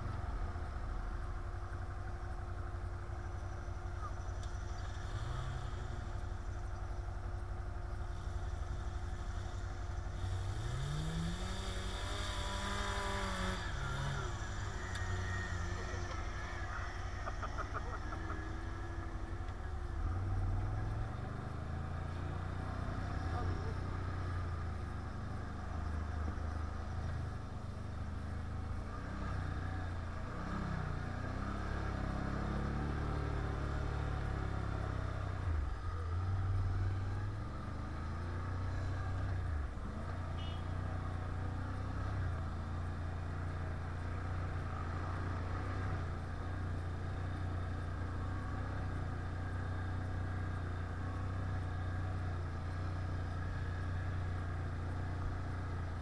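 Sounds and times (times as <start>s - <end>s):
quad engine revving: 10.2s - 19.6s.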